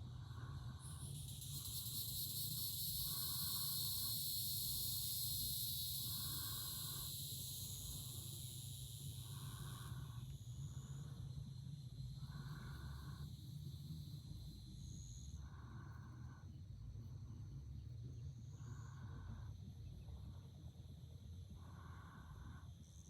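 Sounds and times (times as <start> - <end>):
high-pitched insect trill: 0.0 - 16.8
lower pulsing insect call: 0.0 - 23.0.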